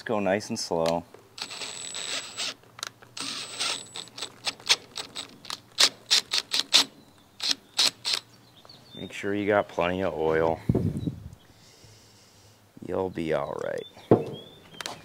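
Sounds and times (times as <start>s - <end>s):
drill whirring: 1.4s - 2.6s, 3.2s - 8.2s
low steady drill hum: 1.4s - 2.6s, 3.2s - 4.6s.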